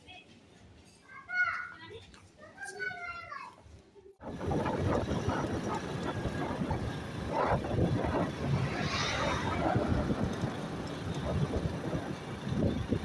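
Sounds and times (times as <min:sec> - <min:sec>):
vehicle engine and road noise: 0:04.2 - 0:13.0.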